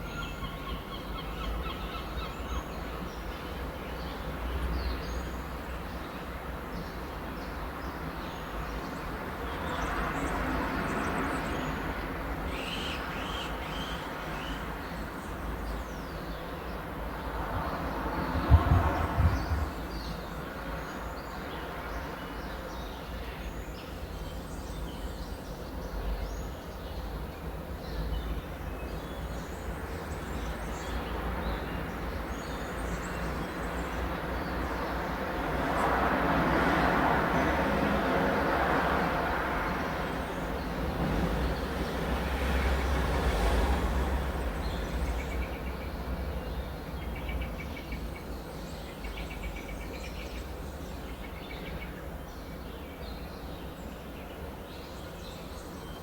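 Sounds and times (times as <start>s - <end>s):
birds chirping: 17.2s - 21.4s
rushing noise: 17.9s - 20.1s
low thump: 18.4s - 19.8s.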